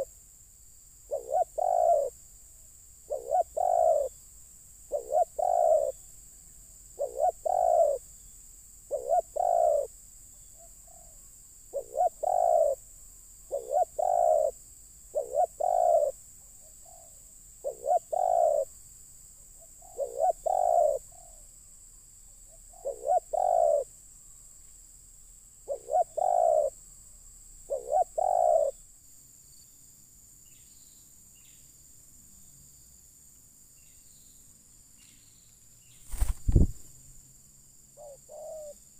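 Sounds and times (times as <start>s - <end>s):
dove cooing: 1.1s - 2.2s, 3.1s - 4.2s, 4.9s - 6.0s, 7.0s - 8.0s, 8.9s - 9.9s, 10.6s - 12.8s, 13.5s - 18.7s, 19.8s - 21.4s, 22.7s - 23.9s, 25.7s - 26.8s, 27.7s - 28.8s, 38.0s - 38.8s.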